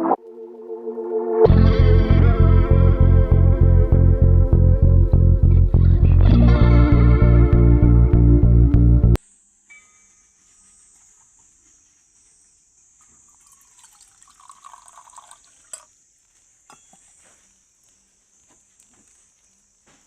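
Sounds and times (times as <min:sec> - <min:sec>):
high insect drone: 0:09.2 - 0:16.5
faint trickle of liquid: 0:13.1 - 0:15.9.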